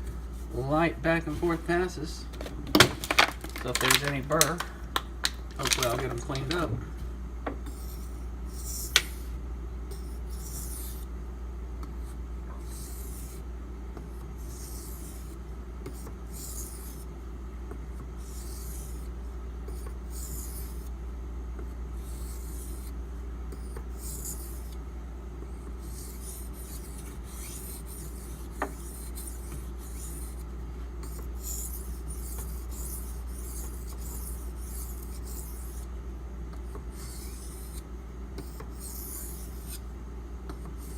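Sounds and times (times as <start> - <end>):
knife rasping on whetstone: 25.8 - 35.9, 37.0 - 37.8, 38.4 - 39.8.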